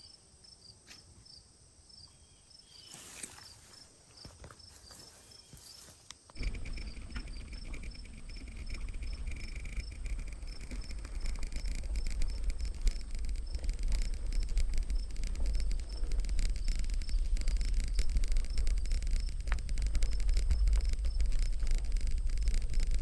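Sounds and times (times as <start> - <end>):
insects chirping: 0.0 - 23.0
loud low rumble with crackling: 6.4 - 23.0.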